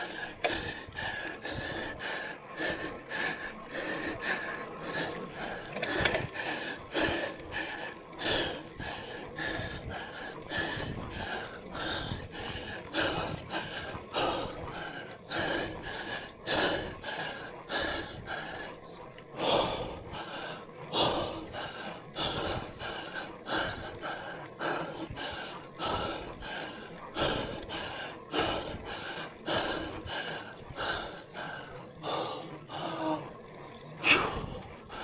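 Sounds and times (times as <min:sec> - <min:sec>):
person breathing hard: 0:00.0 - 0:18.8, 0:19.4 - 0:35.0.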